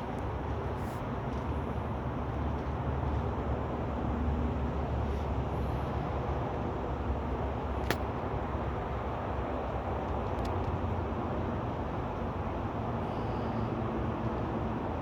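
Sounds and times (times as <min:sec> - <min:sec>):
sharp click: 0:07.8 - 0:08.0.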